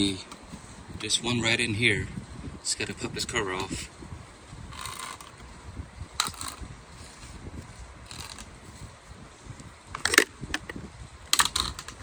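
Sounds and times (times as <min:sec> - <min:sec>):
plastic panel clicks and snaps: 0:10.0 - 0:10.8.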